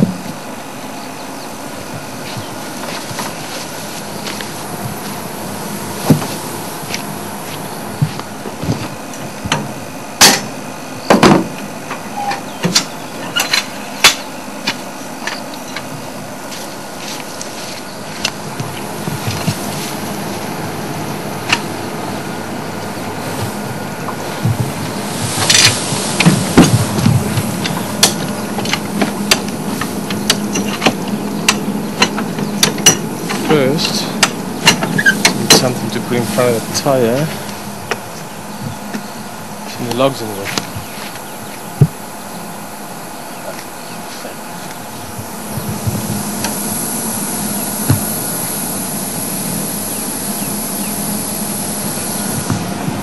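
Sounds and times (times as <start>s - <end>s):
steady hiss: 0.0s - 10.8s, 11.4s - 53.0s
steady low hum: 0.0s - 53.0s.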